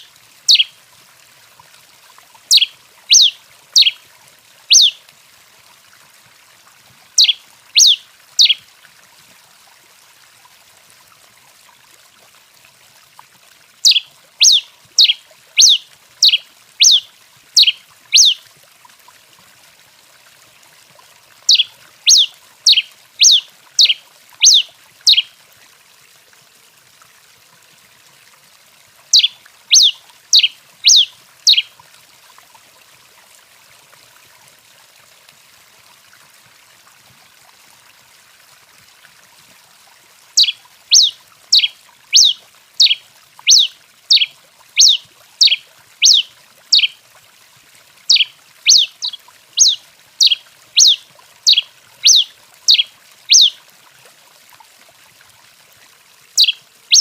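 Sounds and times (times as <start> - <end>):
finch whistled song: 0.5 - 0.7, 2.5 - 4.0, 4.7 - 5.0, 7.2 - 8.6, 13.8 - 18.4, 21.5 - 25.3, 29.1 - 31.7, 40.4 - 47.0, 48.1 - 53.6, 56.4 - 57.0.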